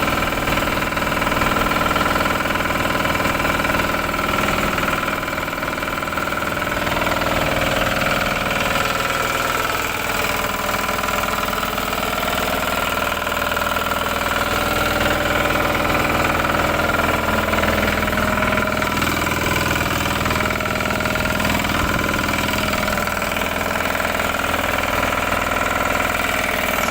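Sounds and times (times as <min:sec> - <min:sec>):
engine running at low speed: 0:00.0 - 0:26.9.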